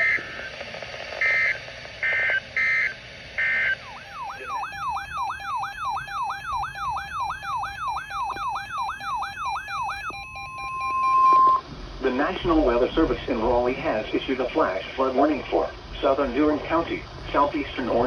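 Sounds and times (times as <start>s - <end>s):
steady tone: 3.4s - 11.6s
two-tone digital data warble: 3.4s - 11.6s
upward sweeping alert tone: 3.8s - 11.6s.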